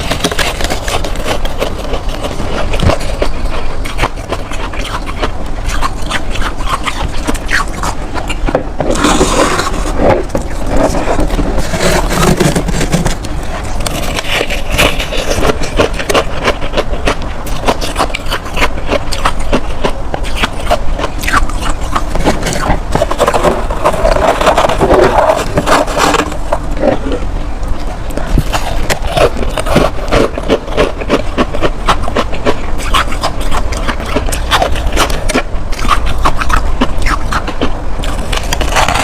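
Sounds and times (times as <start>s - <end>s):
frost being scraped and crunched: 0.0s - 19.6s, 20.2s - 27.2s, 38.0s - 39.0s.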